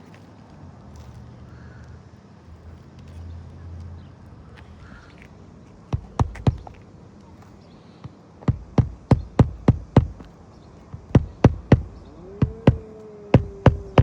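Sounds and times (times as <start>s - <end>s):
hammer driving nails: 6.0s - 6.7s, 8.5s - 10.3s, 11.0s - 14.0s.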